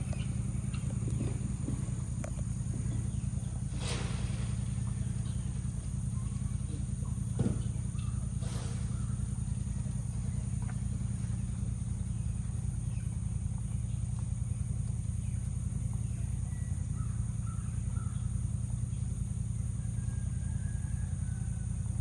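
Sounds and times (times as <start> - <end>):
rustles: 0.0 - 17.0
low hum: 0.0 - 22.0.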